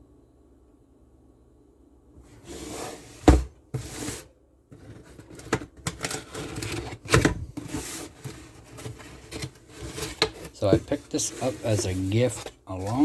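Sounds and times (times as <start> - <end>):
rustling and scraping: 2.3 - 13.0.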